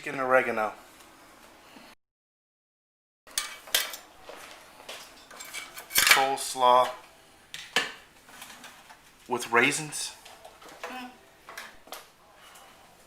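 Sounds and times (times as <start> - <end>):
dishes and utensils clinking: 3.3 - 4.1, 5.0 - 6.9.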